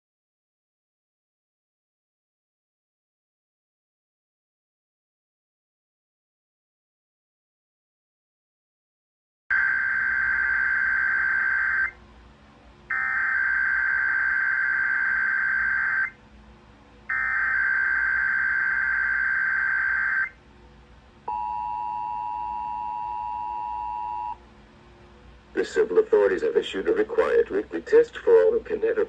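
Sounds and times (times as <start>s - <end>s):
screeching data bursts: 9.6s - 11.9s, 12.9s - 16.1s, 17.1s - 20.3s
two-tone attention signal: 21.3s - 24.4s.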